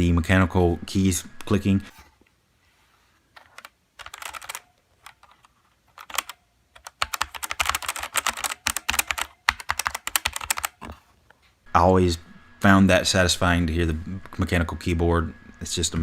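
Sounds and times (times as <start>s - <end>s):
mechanical keyboard typing: 3.4s - 10.9s.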